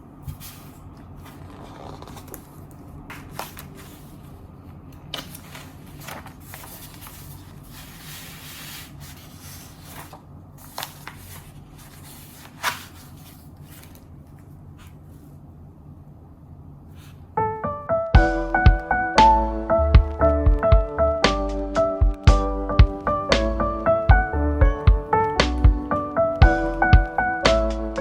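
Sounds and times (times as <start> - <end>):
paper rustling and rubbing: 0.2 - 4.5, 5.1 - 15.4.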